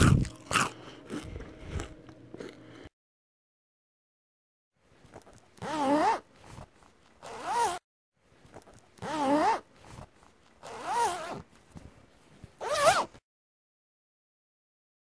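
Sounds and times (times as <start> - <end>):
zipper zipping: 0.0 - 0.7, 5.6 - 7.8, 9.0 - 11.5, 12.6 - 13.2.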